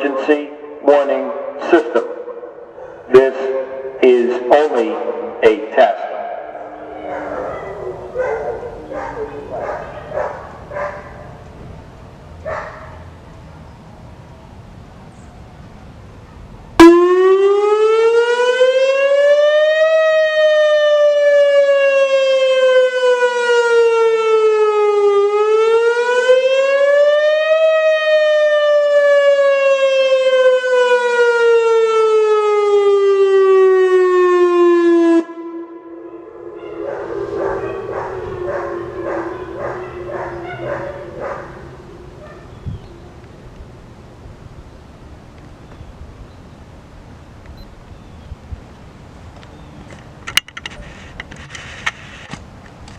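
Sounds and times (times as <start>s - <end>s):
voice message announcement: 0.0s - 2.1s, 3.1s - 6.0s
warning siren wailing: 0.0s - 11.4s, 16.8s - 44.0s.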